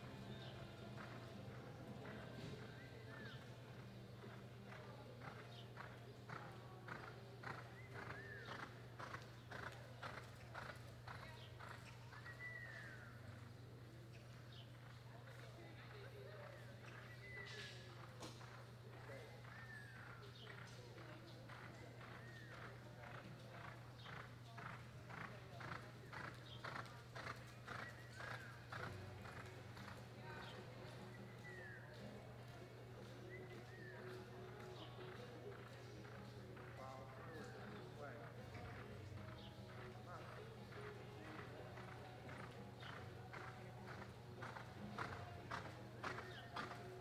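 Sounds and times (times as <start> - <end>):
horse hoofbeats: 33.2 - 47.0.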